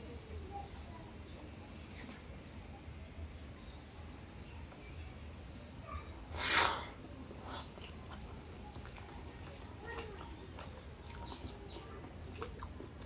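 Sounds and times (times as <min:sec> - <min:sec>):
faint eating noises: 0:00.0 - 0:13.0
sharp rush of breath: 0:06.3 - 0:07.7.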